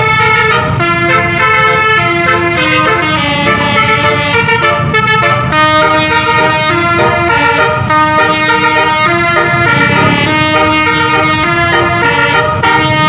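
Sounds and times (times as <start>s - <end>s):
bus horn playing a melody: 0.0s - 13.0s
low rumble: 9.1s - 11.6s.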